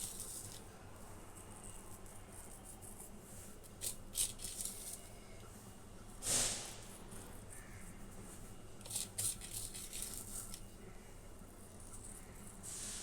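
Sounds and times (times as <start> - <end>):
seasoning container rattling: 8.8 - 10.6.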